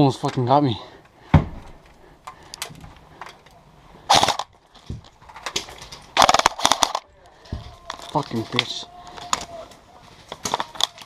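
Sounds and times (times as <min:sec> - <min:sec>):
thump: 0:01.3 - 0:01.7
airsoft guns firing rapid bursts: 0:04.1 - 0:04.5.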